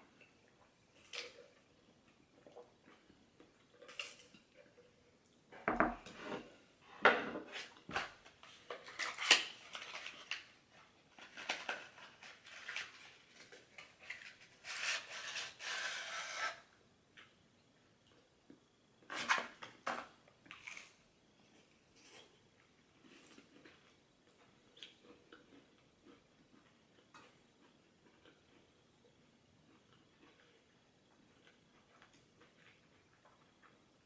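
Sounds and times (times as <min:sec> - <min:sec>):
food packaging rustle: 0:07.9 - 0:16.4
chewing and crunching: 0:23.0 - 0:28.8, 0:29.6 - 0:33.9.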